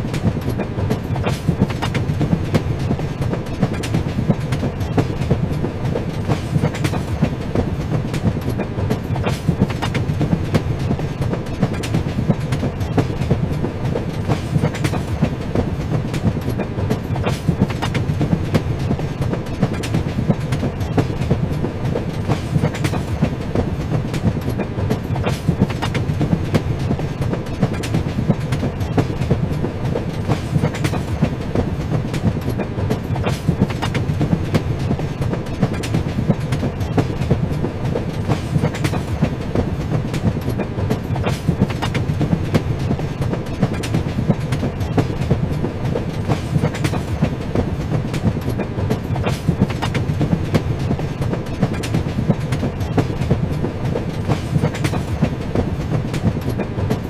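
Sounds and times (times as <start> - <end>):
train rumbling on tracks: 0.0 - 57.0
wheels clacking over rail joints: 0.0 - 57.0.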